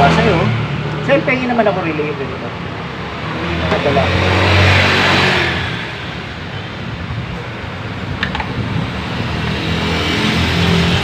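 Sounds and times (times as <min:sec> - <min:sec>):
motor vehicle passing: 0:00.0 - 0:07.1
steady traffic rumble: 0:00.0 - 0:11.0.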